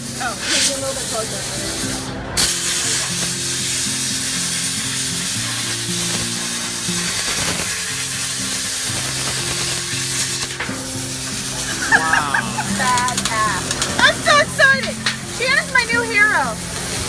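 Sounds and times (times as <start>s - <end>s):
cutting torch hissing: 0.0s - 17.0s
background music: 6.8s - 17.0s.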